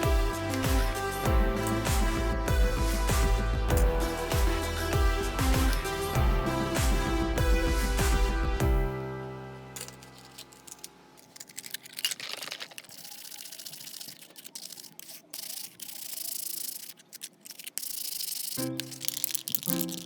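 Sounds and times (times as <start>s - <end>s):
music: 0.0s - 11.2s, 18.6s - 20.0s.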